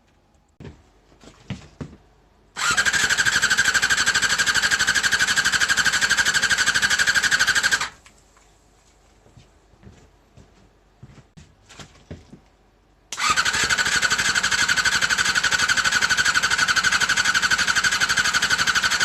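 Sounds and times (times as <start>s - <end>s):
engine cranking by starter: 2.6s - 8.0s, 13.2s - 19.0s.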